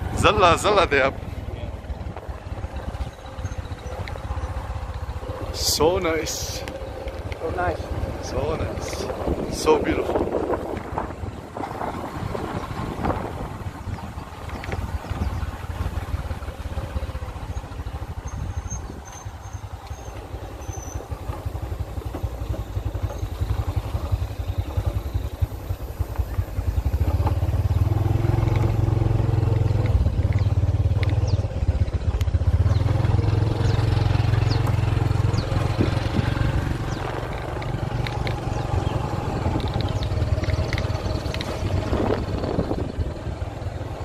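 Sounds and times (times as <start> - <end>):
motorbike engine running: 0.0 - 44.0
wind noise on microphone: 7.9 - 19.7, 33.6 - 44.0.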